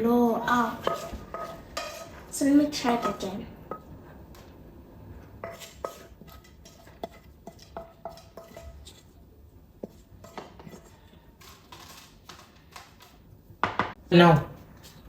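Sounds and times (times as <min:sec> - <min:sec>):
utensils clinking against dishes: 0:00.8 - 0:02.2, 0:05.4 - 0:09.0.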